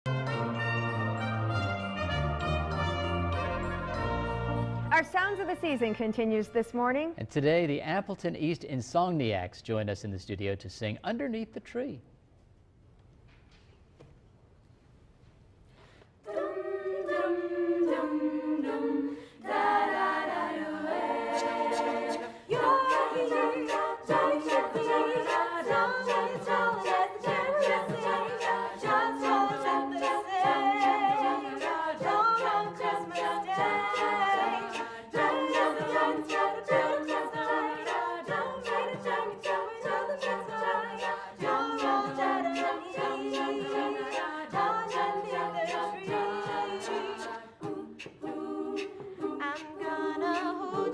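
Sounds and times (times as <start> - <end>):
a cappella group singing: 16.2 - 50.9
vocal percussion beat: 19.7 - 50.9.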